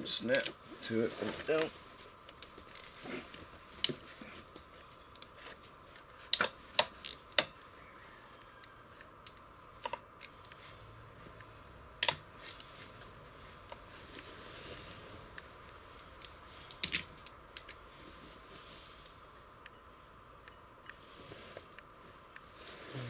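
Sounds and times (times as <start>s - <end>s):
metallic clicks of tools and bolts: 0.3s - 0.6s, 16.2s - 17.7s.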